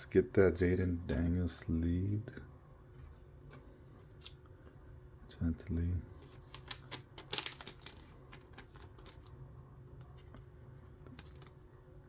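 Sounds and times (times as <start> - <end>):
plastic rustling and crinkling: 6.2 - 11.8.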